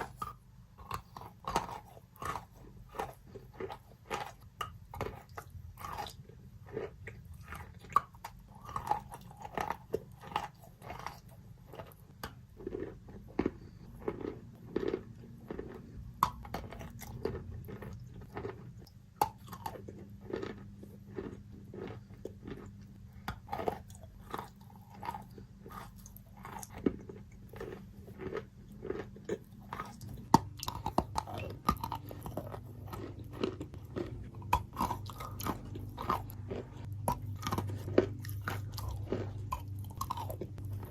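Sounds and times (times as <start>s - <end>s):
wet crunchy chewing: 0.0s - 40.9s
low hum: 27.4s - 40.9s.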